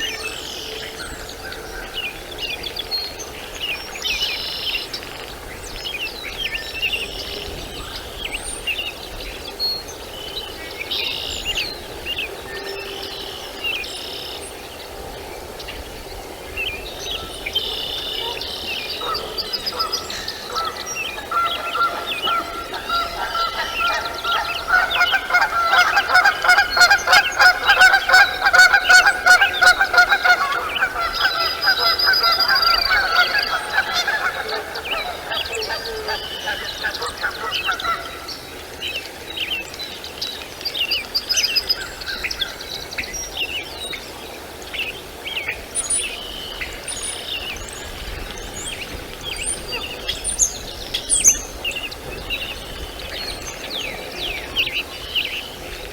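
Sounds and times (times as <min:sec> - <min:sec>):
repeated honking bird calls: 0:19.0 - 0:38.2.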